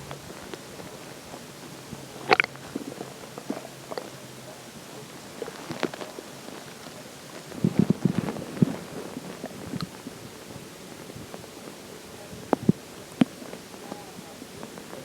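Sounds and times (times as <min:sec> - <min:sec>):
stomach gurgling: 0:00.0 - 0:15.0.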